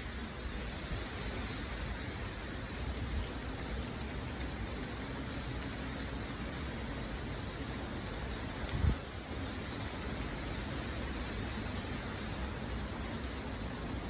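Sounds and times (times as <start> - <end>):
wind hissing with low rumble: 0.0 - 14.0.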